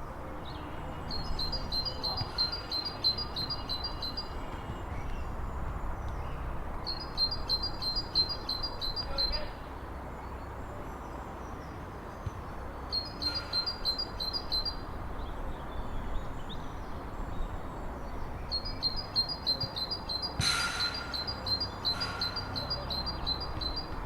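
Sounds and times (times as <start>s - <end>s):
great tit singing: 0.4s - 5.4s, 6.0s - 9.8s, 12.9s - 24.0s.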